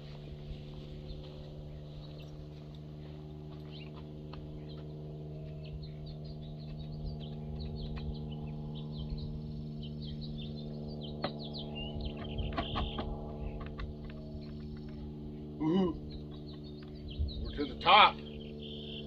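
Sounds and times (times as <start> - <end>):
steady low hum: 0.0 - 19.0
bird chirps: 3.6 - 13.6, 14.3 - 19.0.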